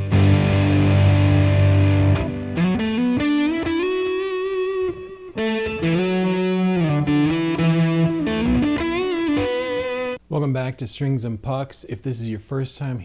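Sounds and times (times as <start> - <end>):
overdriven electric guitar: 0.0 - 10.2.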